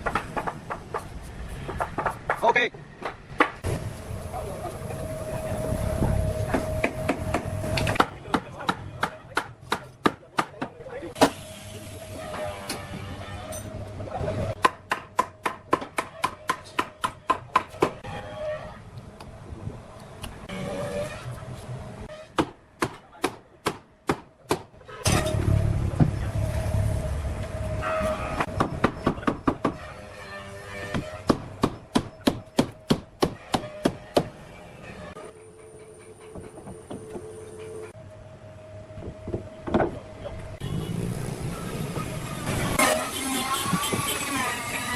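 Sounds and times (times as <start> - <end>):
hammer striking wood: 0.0 - 1.1, 1.7 - 2.4, 14.6 - 18.0, 22.4 - 24.7, 28.4 - 29.9, 30.9 - 34.4.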